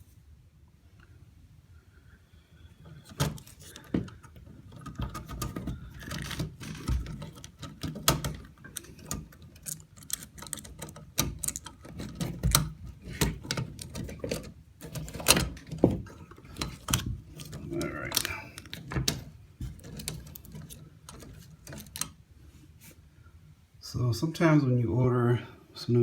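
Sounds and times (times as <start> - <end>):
rustling and scraping: 2.8 - 23.0
clicks taps and knocks: 3.1 - 22.2.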